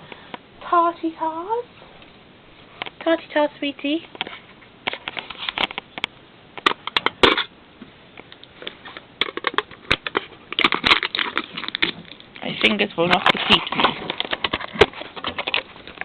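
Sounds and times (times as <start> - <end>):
packaging crinkling: 8.6 - 16.0.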